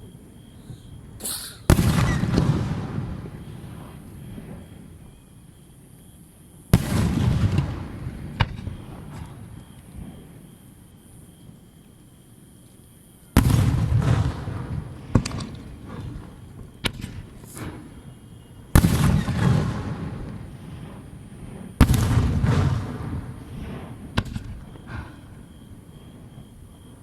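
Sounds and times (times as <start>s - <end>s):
firework booms with rumbling tail: 0.9s - 4.9s, 6.8s - 10.2s, 13.4s - 27.0s
sharp firework cracks: 1.2s - 3.2s, 21.8s - 25.2s.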